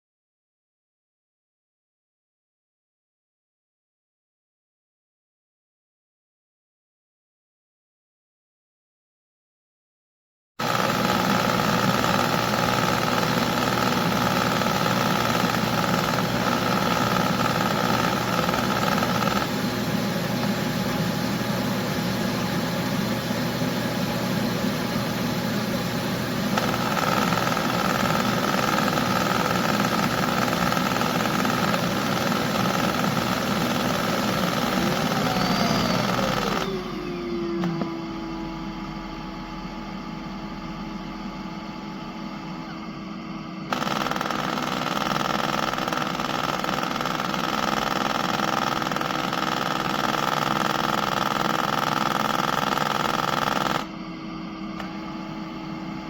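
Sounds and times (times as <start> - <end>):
robot vacuum motor whining: 10.6 - 21.1, 26.4 - 39.0.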